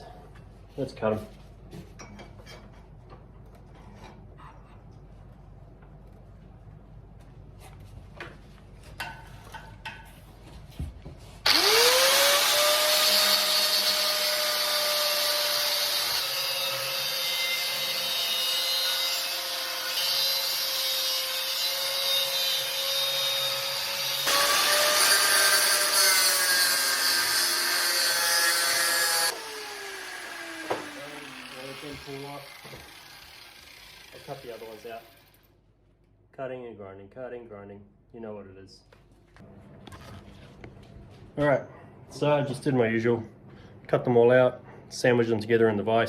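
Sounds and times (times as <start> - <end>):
angle grinder cutting steel: 11.4 - 35.5.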